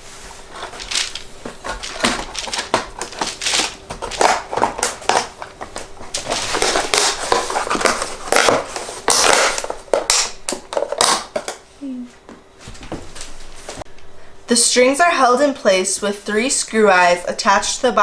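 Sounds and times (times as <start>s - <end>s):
wood scraping against wood: 0.0s - 9.0s.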